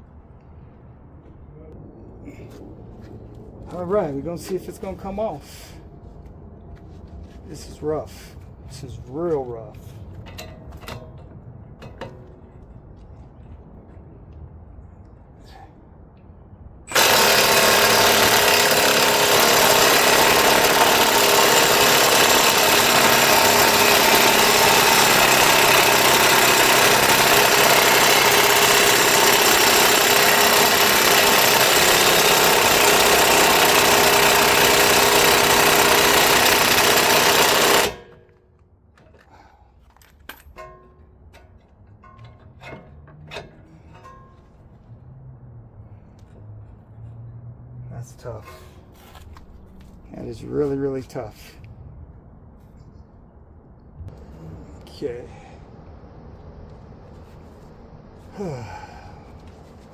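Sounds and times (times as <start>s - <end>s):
impact wrench hammering: 16.9s - 38.2s.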